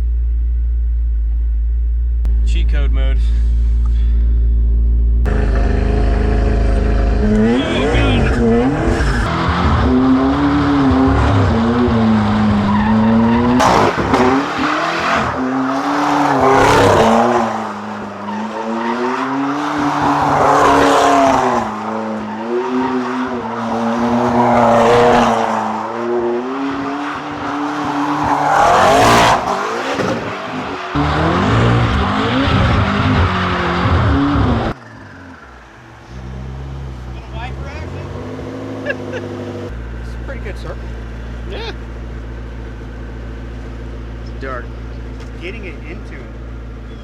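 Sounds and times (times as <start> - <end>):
car engine at high revs: 0.0 - 47.0
tyres squealing and skidding: 5.3 - 40.2, 46.2 - 47.0.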